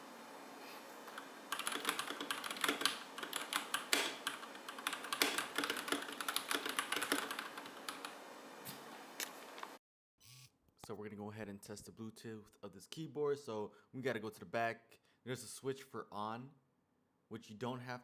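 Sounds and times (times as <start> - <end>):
mechanical keyboard typing: 1.1 - 8.3.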